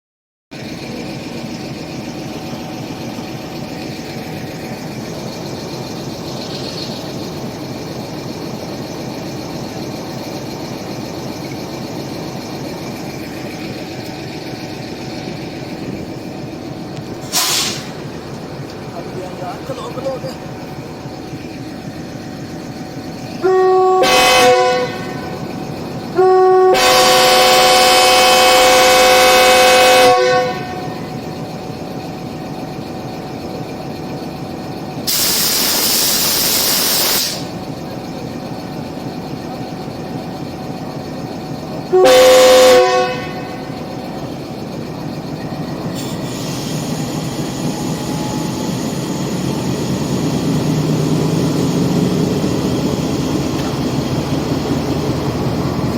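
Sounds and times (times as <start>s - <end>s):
train rumble: 0.5s - 55.9s
air hiss: 17.2s - 18.1s, 35.1s - 37.6s, 45.9s - 49.4s
locomotive air horn blasts: 23.4s - 25.5s, 26.1s - 31.1s, 41.9s - 43.9s.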